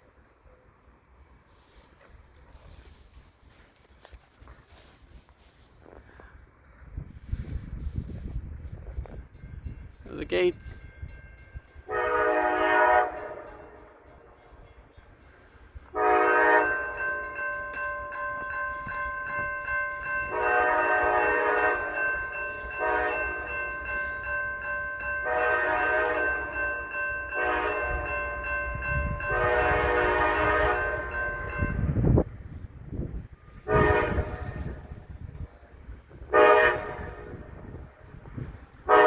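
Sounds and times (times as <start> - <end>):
low rumble of train: 0.0 - 39.0
train horn blasts: 11.8 - 14.0, 15.9 - 17.1, 20.2 - 23.8, 25.2 - 26.6, 27.3 - 28.2, 29.1 - 32.2, 33.4 - 35.1, 36.2 - 37.7.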